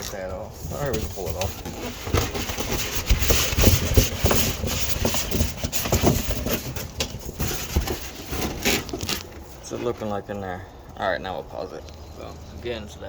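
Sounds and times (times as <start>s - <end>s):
knocks and bumps: 0.0s - 10.0s
packing material rustling: 0.0s - 10.0s.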